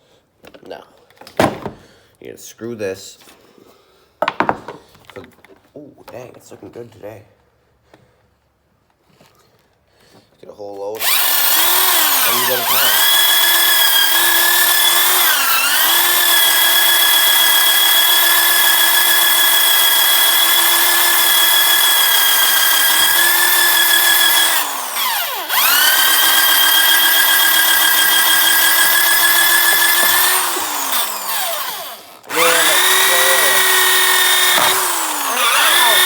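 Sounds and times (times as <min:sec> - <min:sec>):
electric motor whining: 0:11.0 - 0:36.0.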